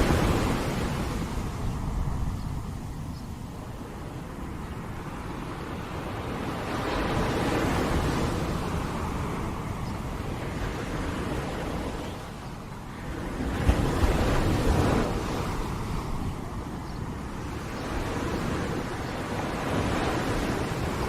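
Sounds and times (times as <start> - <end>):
ocean waves breaking on beach: 0.0 - 21.0.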